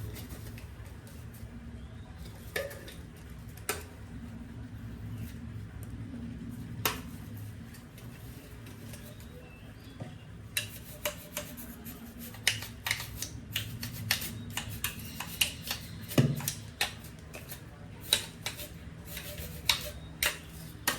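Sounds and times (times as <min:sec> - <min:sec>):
low steady hum: 0:00.0 - 0:20.9
plastic clicks and taps: 0:12.4 - 0:17.0.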